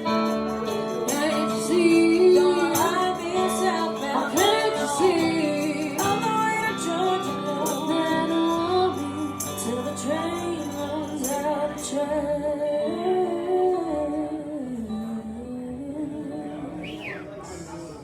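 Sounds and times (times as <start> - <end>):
band playing country-rock: 0.0 - 12.0.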